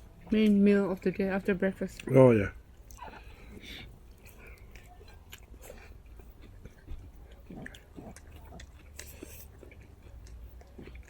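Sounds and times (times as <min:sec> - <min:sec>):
people chewing food: 0:00.0 - 0:11.0
eating clicks and smacks: 0:02.7 - 0:11.0.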